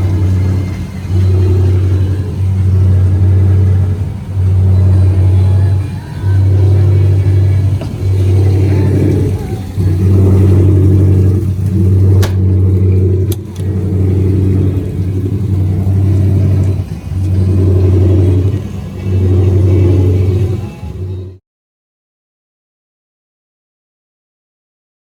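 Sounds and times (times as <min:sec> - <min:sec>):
boat engine running: 0:00.0 - 0:21.4
sharp clicks: 0:11.4 - 0:13.8.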